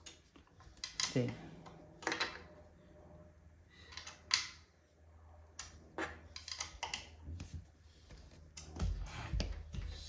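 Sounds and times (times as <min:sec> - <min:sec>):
wooden parts tapping: 0:05.6 - 0:07.2.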